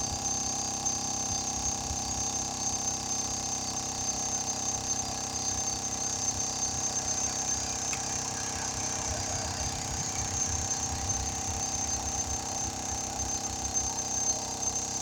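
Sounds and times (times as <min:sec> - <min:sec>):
machine whining and humming: 0:00.0 - 0:15.0.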